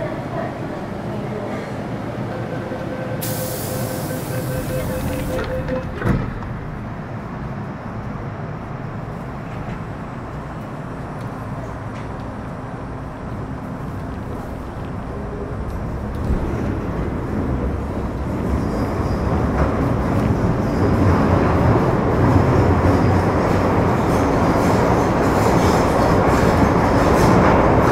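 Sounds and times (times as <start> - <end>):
train wheels rumbling on rail: 0.0 - 27.9
hiss: 3.2 - 4.3.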